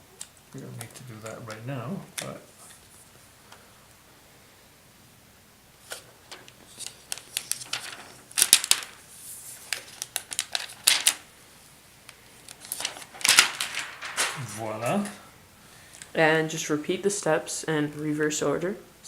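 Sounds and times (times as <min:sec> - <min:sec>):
laptop screen clicking and crackling: 0:00.2 - 0:02.4, 0:05.9 - 0:11.3.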